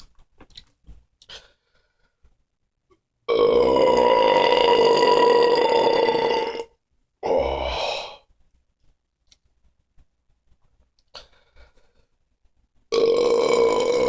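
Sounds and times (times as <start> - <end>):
loud belches: 3.3 - 7.5, 12.9 - 14.0.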